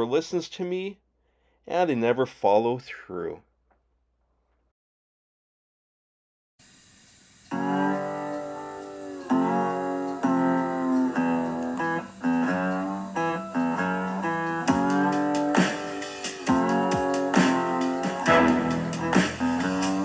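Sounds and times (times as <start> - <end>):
guitar playing chords: 7.5 - 20.0.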